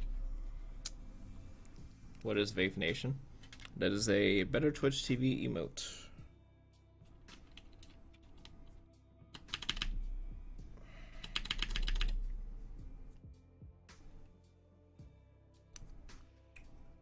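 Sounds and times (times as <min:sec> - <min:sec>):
mechanical keyboard keys clacking: 0:09.4 - 0:09.9, 0:11.3 - 0:12.2.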